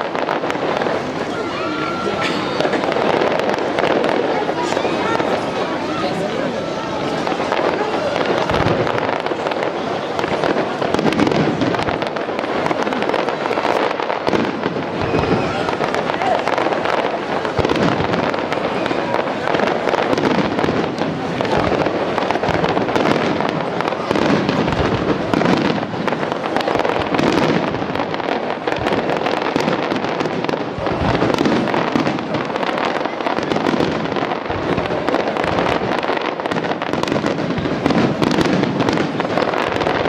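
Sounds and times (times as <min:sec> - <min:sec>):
fireworks bangs pops and crackling: 0:00.0 - 0:40.0.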